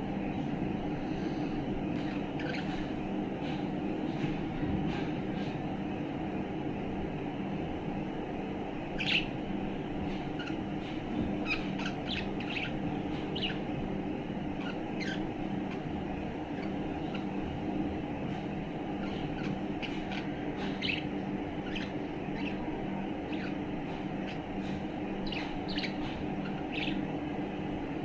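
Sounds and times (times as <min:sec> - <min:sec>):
steady low hum: 0:00.0 - 0:28.0
budgerigar chirping: 0:11.4 - 0:13.6, 0:14.6 - 0:15.2, 0:19.0 - 0:22.6, 0:25.2 - 0:27.0.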